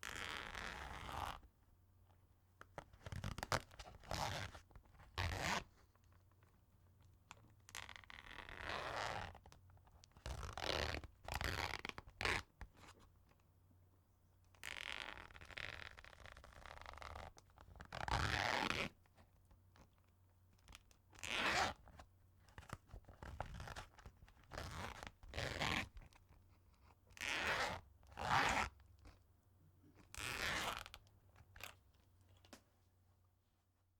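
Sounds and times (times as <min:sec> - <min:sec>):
zipper pulled open and shut: 0:00.0 - 0:01.4, 0:03.1 - 0:04.6, 0:05.2 - 0:05.7, 0:07.7 - 0:09.4, 0:10.3 - 0:12.5, 0:14.6 - 0:19.0, 0:21.2 - 0:22.0, 0:23.2 - 0:26.2, 0:27.1 - 0:29.2, 0:30.0 - 0:31.0.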